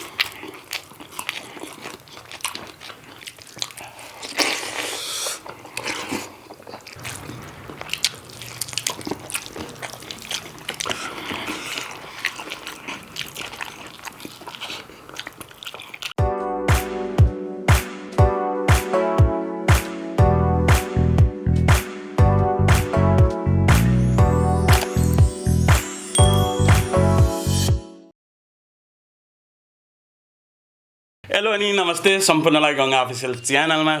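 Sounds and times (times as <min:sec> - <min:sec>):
people chewing: 0:00.0 - 0:16.9, 0:19.7 - 0:20.1, 0:23.7 - 0:26.9
wet mouth clicks and smacks: 0:06.7 - 0:16.1.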